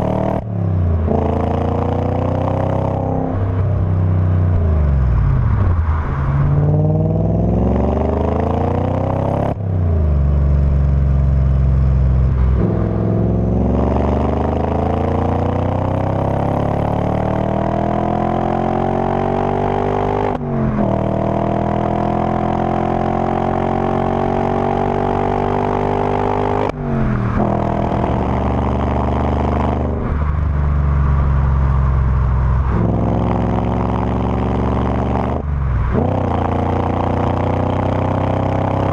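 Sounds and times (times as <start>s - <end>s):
car engine accelerating through gears: 0.0s - 38.9s.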